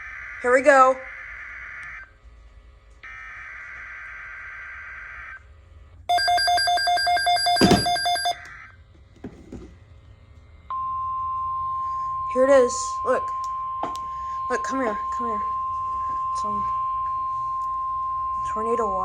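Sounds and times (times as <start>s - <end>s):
rapid bell-like ringing: 6.1s - 8.4s.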